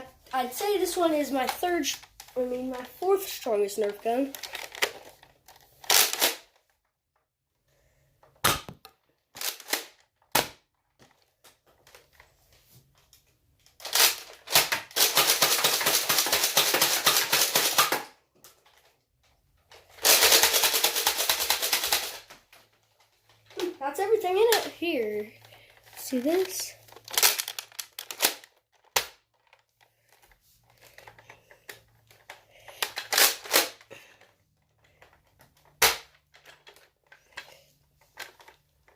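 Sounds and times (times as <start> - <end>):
toy blaster clicking: 13.8 - 18.1, 20.0 - 22.3, 26.2 - 29.2, 32.8 - 33.8.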